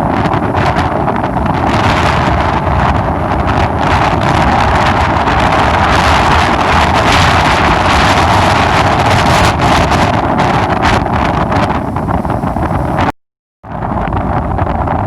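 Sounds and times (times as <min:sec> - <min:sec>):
strong wind on microphone: 0:00.0 - 0:15.0.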